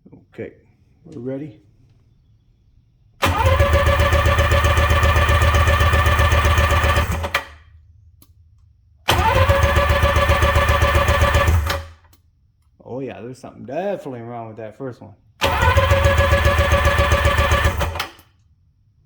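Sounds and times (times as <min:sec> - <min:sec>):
engine cranking on electric starter: 0:03.2 - 0:07.6, 0:09.1 - 0:12.0, 0:15.4 - 0:18.4.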